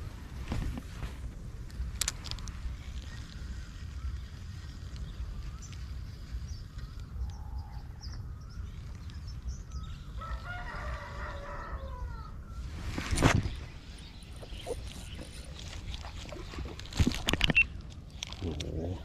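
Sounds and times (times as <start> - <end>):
rooster crowing: 10.2 - 12.4.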